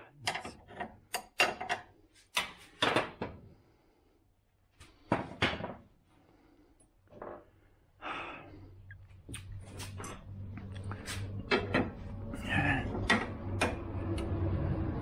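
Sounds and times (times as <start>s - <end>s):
tools and metal parts knocking: 0.2s - 1.9s
steady low hum: 6.3s - 15.0s.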